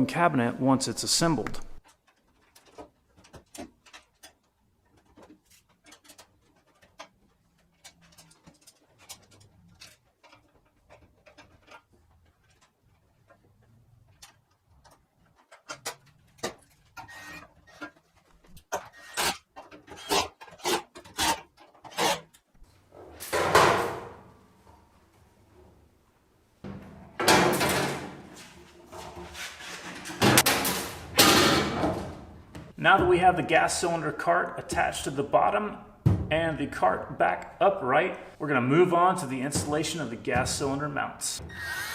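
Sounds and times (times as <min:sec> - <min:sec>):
metal parts clicking and knocking: 0:01.8 - 0:13.4.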